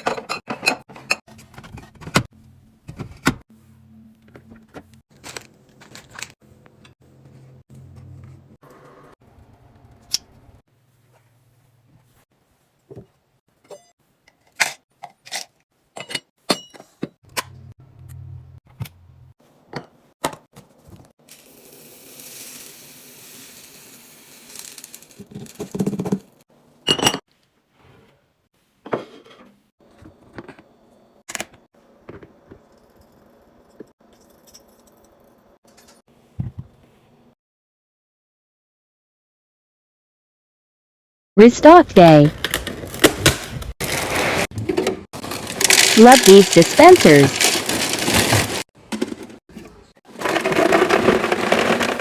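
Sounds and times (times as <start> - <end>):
packaging rustling: 45.2 - 48.6
containers clinking and knocking: 50.1 - 52.0.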